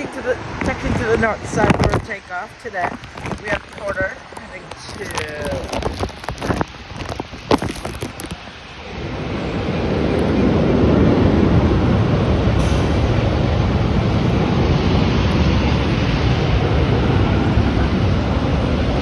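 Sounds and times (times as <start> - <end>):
jet engines at takeoff thrust: 0.0 - 5.6, 6.6 - 19.0.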